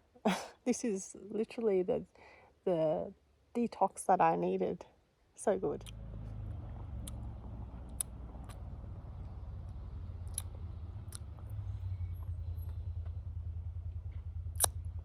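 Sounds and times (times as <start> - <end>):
pulsing low rumble: 5.6 - 15.0.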